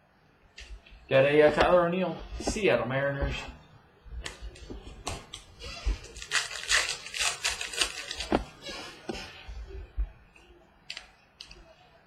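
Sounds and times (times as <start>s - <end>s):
cards rustling: 4.2s - 9.4s.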